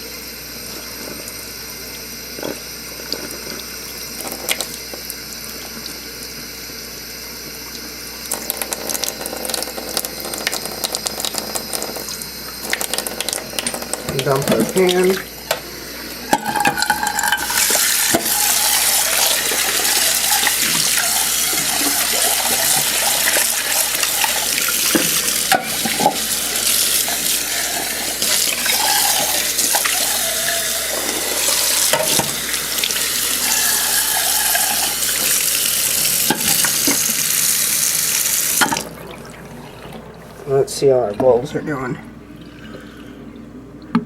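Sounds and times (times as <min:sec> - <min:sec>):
water poured into sink: 0:07.8 - 0:41.5
tap running into sink: 0:08.3 - 0:15.7, 0:16.3 - 0:39.0
pan knocking against sink: 0:16.3 - 0:18.4.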